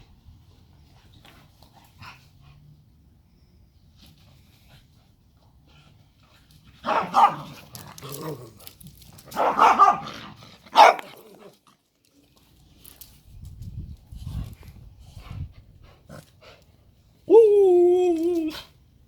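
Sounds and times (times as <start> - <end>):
dogs barking: 6.9 - 7.5, 9.4 - 10.1, 10.7 - 11.1.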